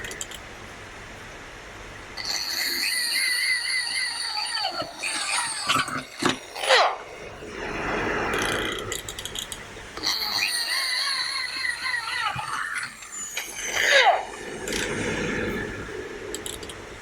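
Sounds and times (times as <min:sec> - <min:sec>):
falling whine: 0:05.0 - 0:17.0.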